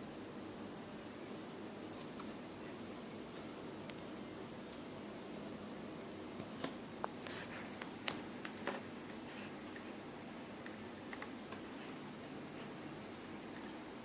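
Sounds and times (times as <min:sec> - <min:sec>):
steady background hiss: 0:00.0 - 0:14.0
typing on a keyboard: 0:10.7 - 0:11.6.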